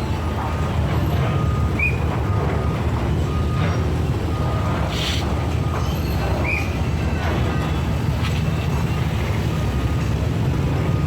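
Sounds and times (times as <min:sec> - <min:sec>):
short hiss: 0:04.9 - 0:05.3.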